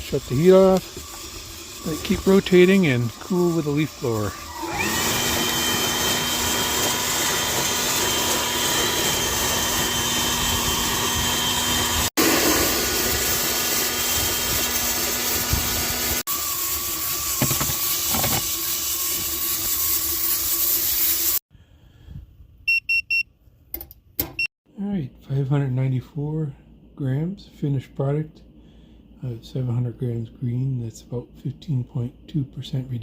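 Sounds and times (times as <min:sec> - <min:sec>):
electric leaf blower running: 0:00.0 - 0:18.6
short electronic beeps: 0:22.7 - 0:23.2.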